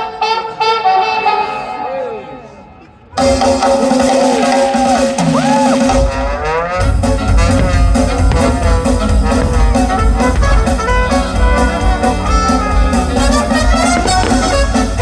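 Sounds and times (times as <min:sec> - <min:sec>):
driving drum beat: 0:03.4 - 0:15.0
orchestral music with brass: 0:03.4 - 0:15.0.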